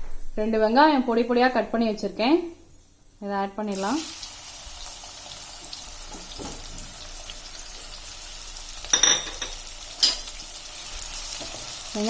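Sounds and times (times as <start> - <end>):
onions sizzling in oil: 3.1 - 12.0.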